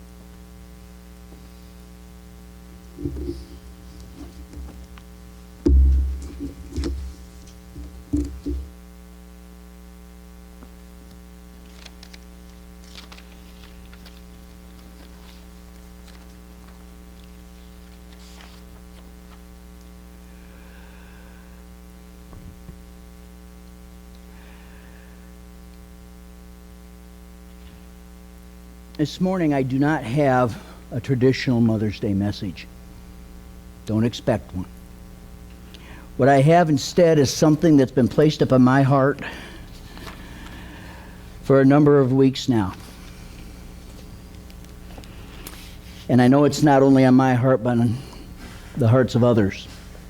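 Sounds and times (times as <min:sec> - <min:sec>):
electrical mains hum: 0:00.0 - 0:50.0
heavy low thumps: 0:05.6 - 0:08.8
faint clicks and rustles: 0:11.1 - 0:19.9.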